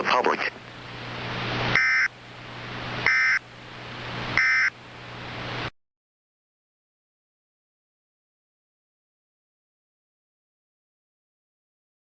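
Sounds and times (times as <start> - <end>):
digital data tone bursts: 1.7 - 2.1, 3.0 - 3.4, 4.4 - 4.7.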